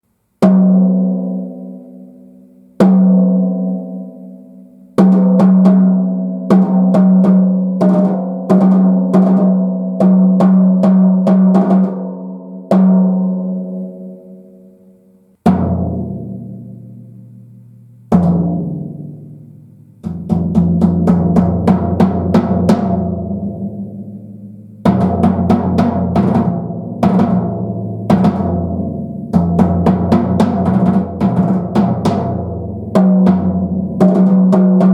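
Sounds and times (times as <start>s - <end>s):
lower-pitched drum: 20.0s - 34.9s
deep bass drum: 24.8s - 34.9s.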